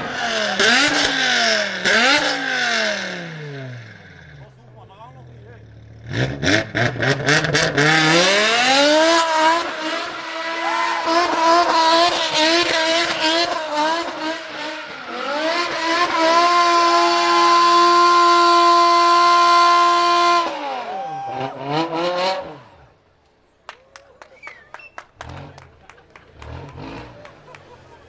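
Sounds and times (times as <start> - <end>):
car engine revving: 0.0 - 23.2, 24.9 - 28.0.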